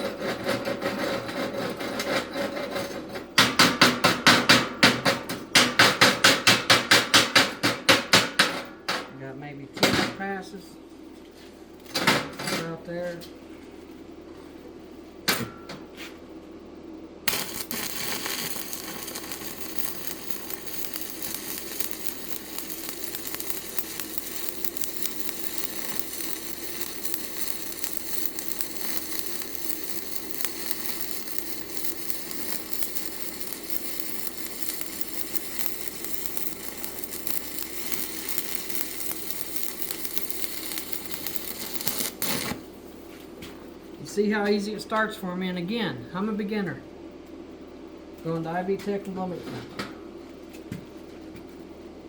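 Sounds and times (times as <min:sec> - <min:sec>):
welding rod scratching: 0:00.0 - 0:03.1, 0:17.3 - 0:42.6
welding arc crackling sizzle: 0:17.3 - 0:42.7.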